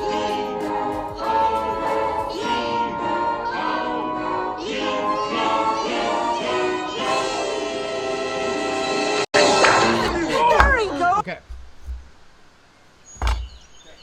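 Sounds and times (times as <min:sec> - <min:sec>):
music with singing voices: 0:00.0 - 0:10.7.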